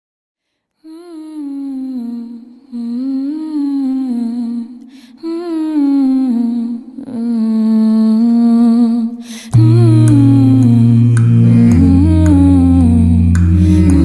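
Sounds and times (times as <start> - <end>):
wordless humming vocal melody: 8.2 - 14.0.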